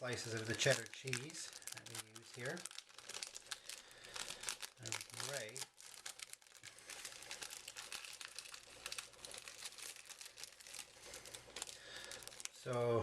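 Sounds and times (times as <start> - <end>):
plastic wrapper crinkling: 0.0 - 13.0.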